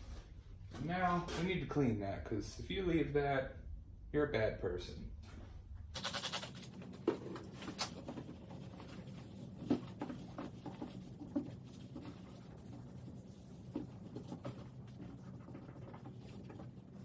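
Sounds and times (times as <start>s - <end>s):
faint rubbing and scrubbing: 6.0s - 17.0s.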